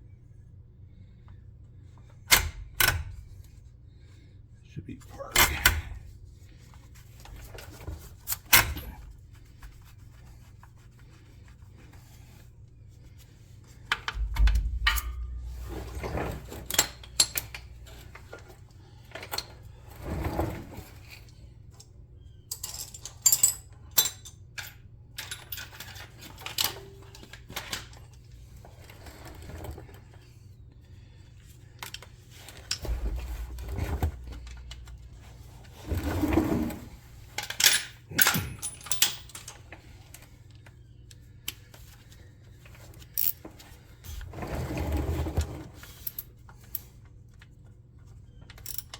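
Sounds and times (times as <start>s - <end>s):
metal tools clicking and clinking: 22.5s - 28.0s, 37.4s - 39.6s, 43.2s - 43.5s, 48.5s - 48.9s.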